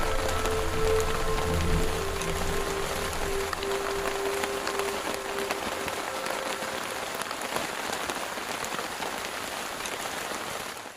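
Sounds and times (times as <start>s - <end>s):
steady rain falling: 0.0s - 10.9s.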